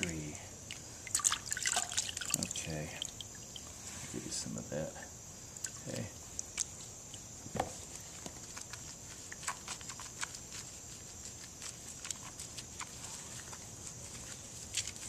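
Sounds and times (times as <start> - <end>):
wet splashes and squelching: 0.7 - 3.3.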